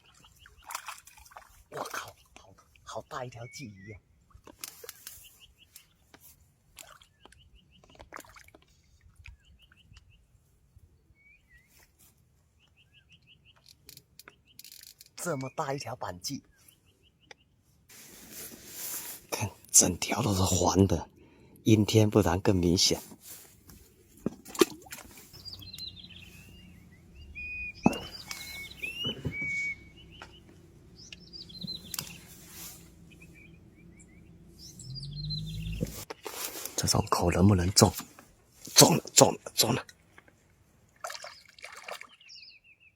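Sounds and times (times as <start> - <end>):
small songbird chirping: 0.0 - 8.0, 9.2 - 17.7, 25.1 - 38.0, 41.1 - 42.9
small bird chirping: 25.1 - 36.1.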